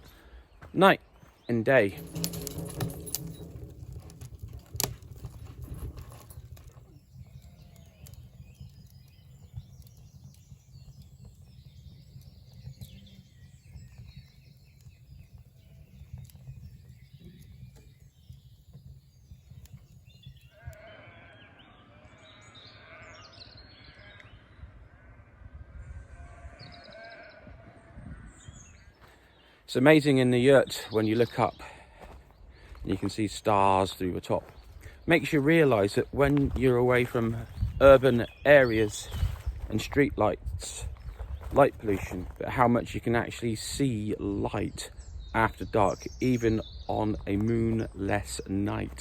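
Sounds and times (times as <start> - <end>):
birds calling: 0.0 - 24.9, 26.0 - 49.0
low steady rumble: 1.9 - 6.0
sheep bleating: 20.5 - 23.3, 26.2 - 27.4.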